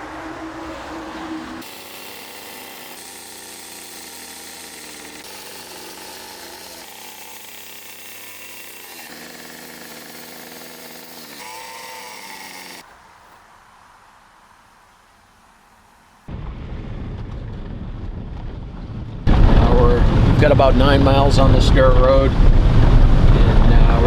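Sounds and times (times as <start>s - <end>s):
chainsaw engine running: 1.6s - 12.8s.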